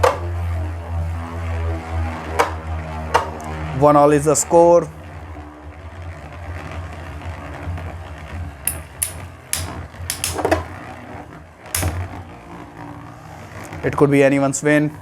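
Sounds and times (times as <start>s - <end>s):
spinning tops clacking together: 8.7s - 10.7s, 11.8s - 12.0s.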